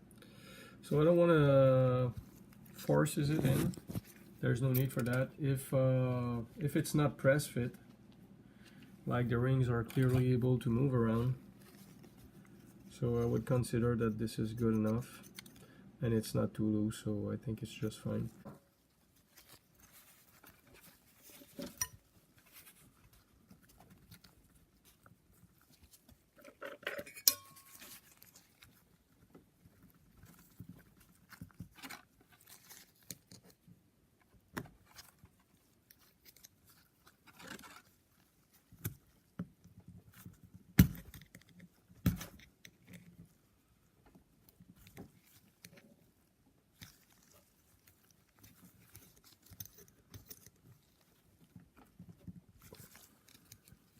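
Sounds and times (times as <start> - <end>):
tools clattering: 26.4 - 28.2.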